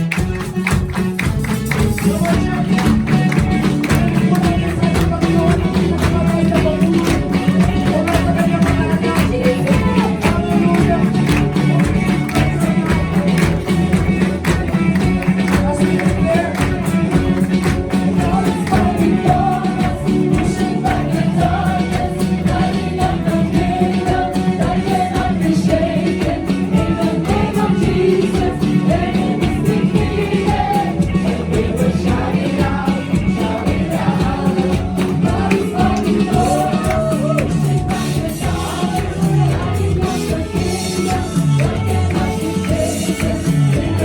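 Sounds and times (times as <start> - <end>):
live band playing: 0.0 - 44.0
voices singing together: 0.9 - 44.0.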